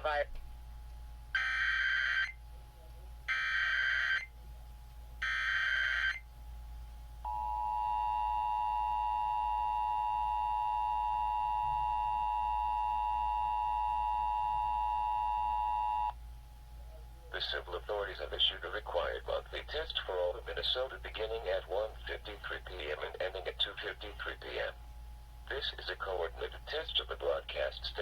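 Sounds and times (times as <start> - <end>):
two-tone alarm signal: 1.4 - 2.4, 3.3 - 4.3, 5.2 - 6.2, 7.3 - 16.1.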